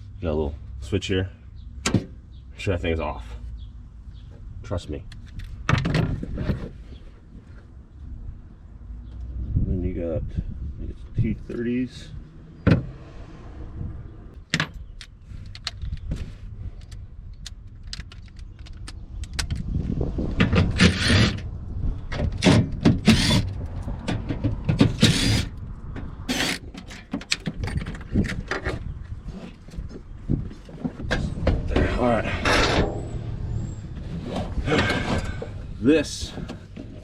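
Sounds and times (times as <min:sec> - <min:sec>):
power driver whirring: 0:23.0 - 0:23.5, 0:24.9 - 0:25.5.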